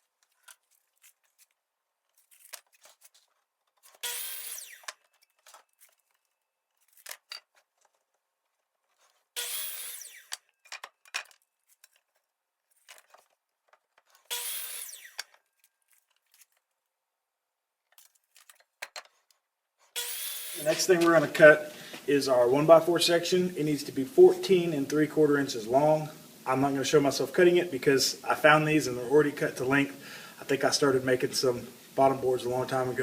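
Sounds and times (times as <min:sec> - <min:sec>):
power chop saw cutting wood: 0:03.8 - 0:05.9, 0:09.3 - 0:10.9, 0:14.2 - 0:15.4, 0:19.9 - 0:21.7.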